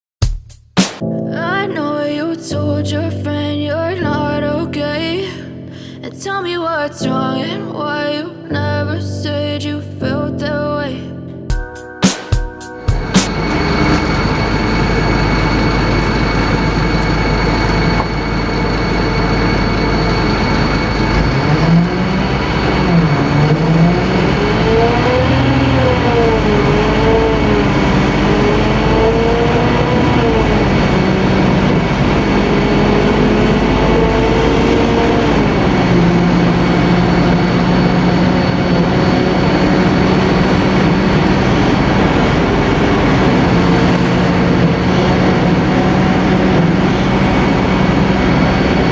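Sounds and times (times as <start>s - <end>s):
diesel bus engine revving: 13.3s - 48.9s.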